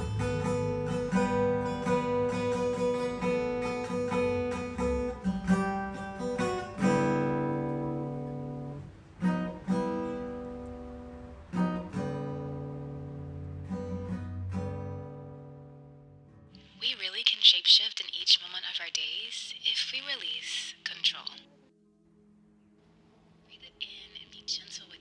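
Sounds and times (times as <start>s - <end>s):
acoustic guitar playing: 0.0s - 16.9s.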